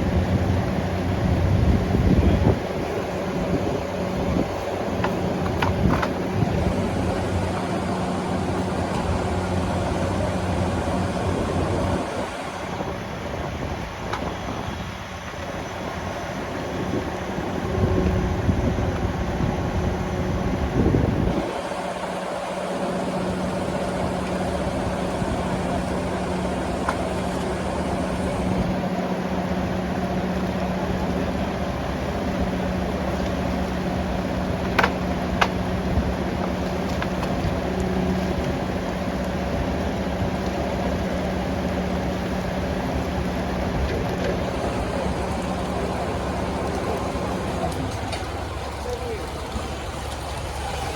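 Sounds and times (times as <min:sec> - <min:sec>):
engine idling: 0:00.0 - 0:50.9
loud low rumble: 0:05.6 - 0:13.2.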